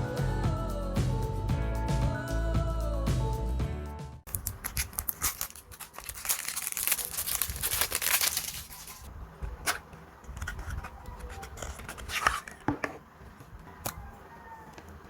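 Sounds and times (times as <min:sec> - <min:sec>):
background music: 0:00.0 - 0:04.3
cellophane wrapper crinkling: 0:04.3 - 0:09.1.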